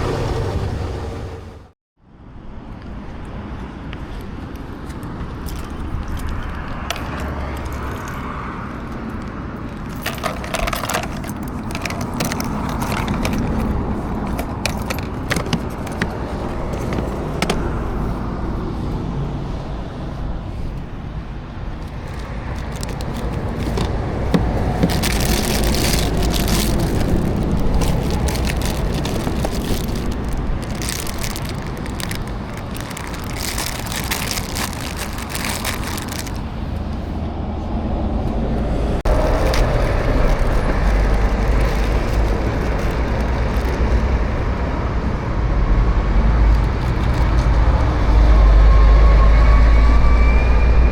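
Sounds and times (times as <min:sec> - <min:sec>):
rushing noise: 0:00.0 - 0:01.7
motorcycle engine and road rumble: 0:00.0 - 0:01.8, 0:02.4 - 0:50.4
clicks and crackles: 0:09.0 - 0:17.7, 0:21.7 - 0:37.0, 0:39.1 - 0:44.2.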